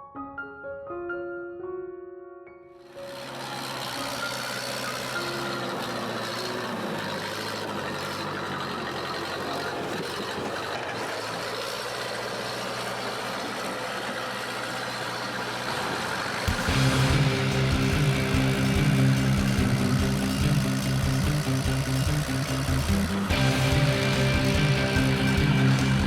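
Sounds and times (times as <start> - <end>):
bulldozer diesel engine running: 3.0 - 26.0.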